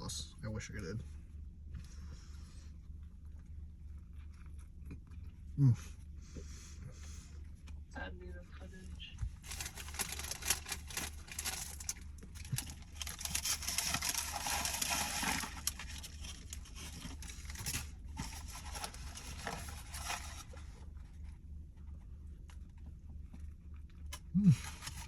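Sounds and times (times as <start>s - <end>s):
paper wrapping crinkling: 9.3s - 21.0s, 24.6s - 25.0s.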